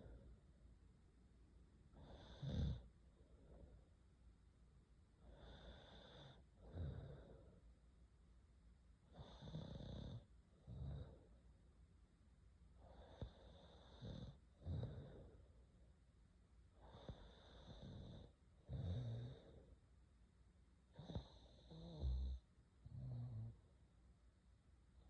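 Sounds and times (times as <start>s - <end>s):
person snoring faintly: 1.9s - 3.8s, 5.2s - 7.6s, 12.8s - 15.5s, 16.8s - 19.7s, 20.9s - 23.6s.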